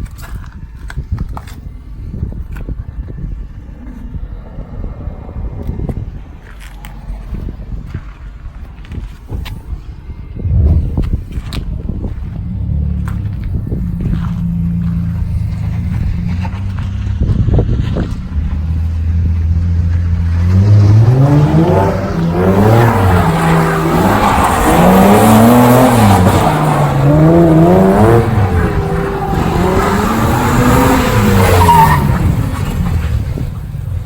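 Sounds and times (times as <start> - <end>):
car engine revving: 10.4 - 34.0
tires skidding: 10.6 - 34.0.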